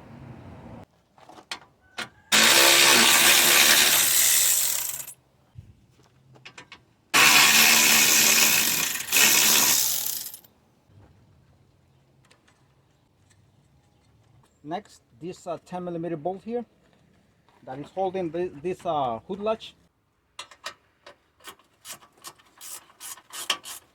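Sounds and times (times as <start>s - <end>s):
power tool spinning out bolts: 2.3s - 5.1s, 7.2s - 10.5s.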